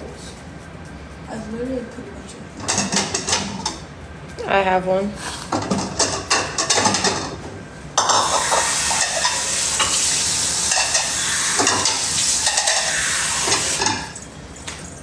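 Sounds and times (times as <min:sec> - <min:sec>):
dishes clinking: 0:02.6 - 0:03.8, 0:05.5 - 0:14.9.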